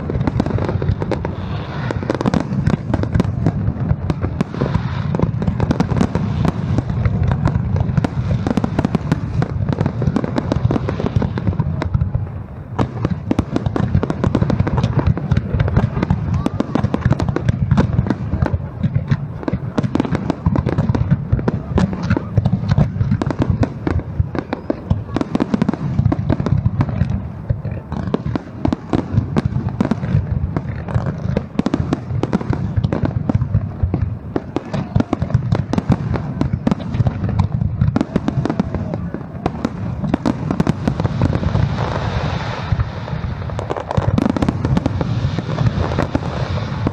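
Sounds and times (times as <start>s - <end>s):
fireworks bangs and crackles: 0.0s - 46.9s.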